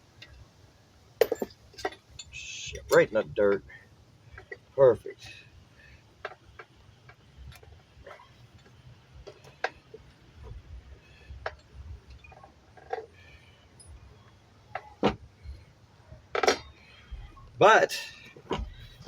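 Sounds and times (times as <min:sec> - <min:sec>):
faint low hum: 0:00.0 - 0:19.0
metal bike parts and tools clicking: 0:01.2 - 0:03.1, 0:06.2 - 0:15.6, 0:16.2 - 0:19.0.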